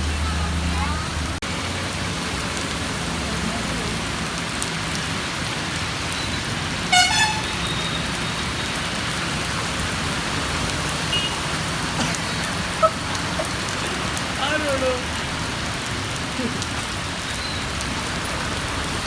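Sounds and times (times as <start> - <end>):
heavy rain: 0.0 - 19.0
traffic through water: 0.0 - 19.0
vehicle horn tooting: 6.9 - 8.8, 11.1 - 11.5.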